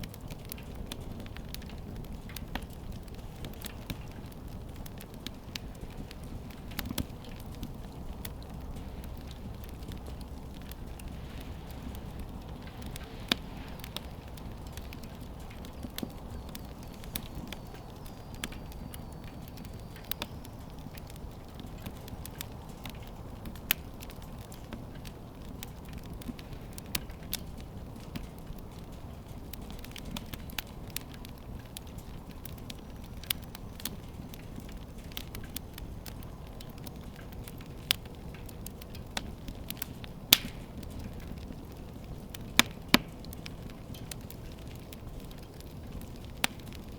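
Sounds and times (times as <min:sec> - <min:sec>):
sharp crackling clicks: 0:00.0 - 0:46.9
steady low rumble: 0:04.5 - 0:19.9.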